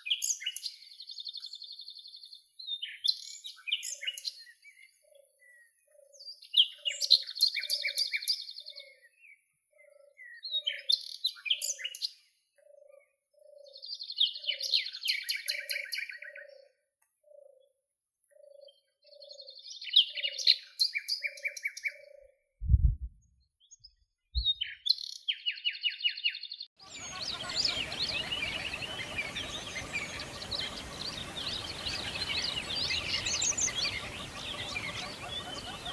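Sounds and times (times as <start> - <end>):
soft low repeating note: 22.6 - 23.2
songbirds trilling: 26.8 - 35.9.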